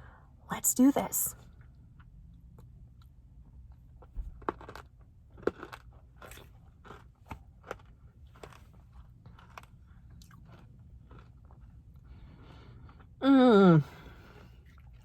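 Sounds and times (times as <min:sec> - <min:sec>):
soft chewing: 0:01.4 - 0:13.2, 0:14.0 - 0:15.0
person crunching ice cream: 0:03.7 - 0:13.4.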